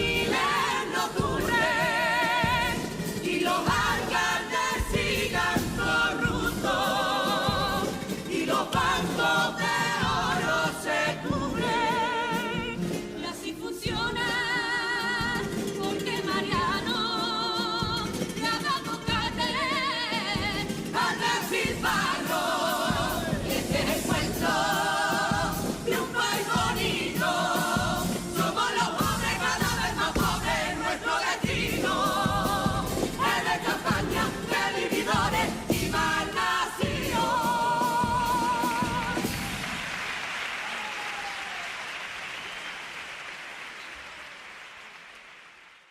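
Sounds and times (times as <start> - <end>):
choir singing: 0.0 - 17.6, 19.1 - 39.8
guitar accompaniment: 0.0 - 39.6
sharp percussion strokes: 20.6 - 39.8
audience applauding: 39.0 - 45.9.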